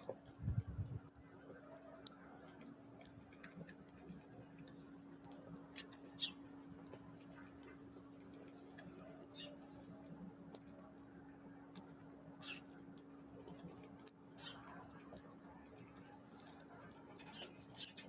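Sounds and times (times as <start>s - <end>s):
faint steady hum: 0.0s - 18.0s.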